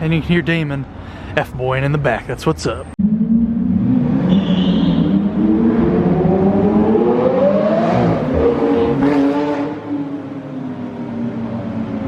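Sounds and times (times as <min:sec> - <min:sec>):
sports car engine accelerating: 0:03.0 - 0:12.0.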